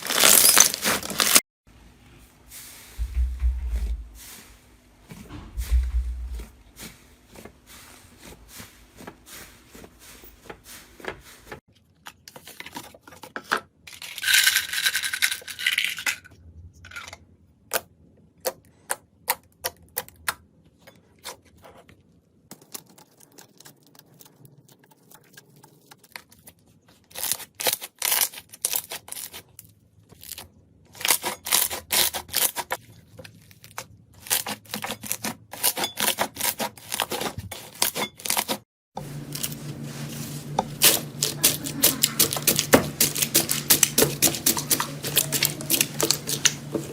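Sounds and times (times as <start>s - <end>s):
slime clicking and crackling: 41.2s - 46.7s.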